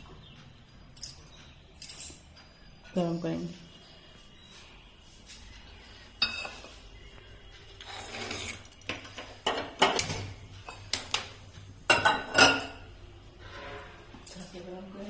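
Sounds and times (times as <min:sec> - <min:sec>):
metal vessels and spoon clinking: 0:00.9 - 0:03.2, 0:05.8 - 0:06.9, 0:07.7 - 0:14.7
metal scraping: 0:07.8 - 0:09.2, 0:13.3 - 0:14.4.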